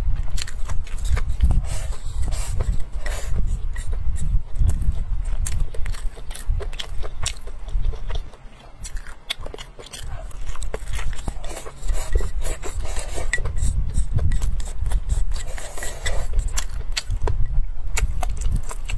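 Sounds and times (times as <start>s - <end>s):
person chewing and crunching food: 0.0s - 18.9s.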